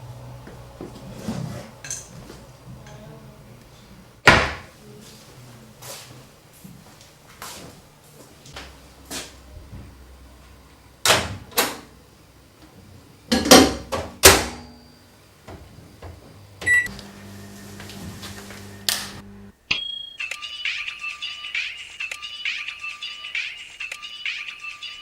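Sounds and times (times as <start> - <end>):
microwave humming: 0.0 - 4.7, 9.7 - 19.7
microwave door clicks and knocks: 4.2 - 4.7
keypad beep: 16.6 - 16.9
music: 19.7 - 25.0.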